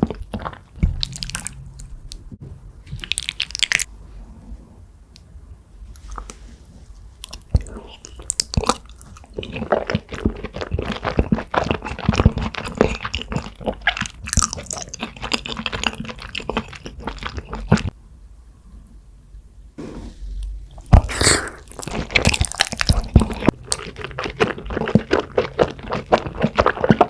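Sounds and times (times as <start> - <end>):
person chewing food: 0.0 - 2.2, 2.9 - 3.9, 7.2 - 17.9, 20.7 - 27.0.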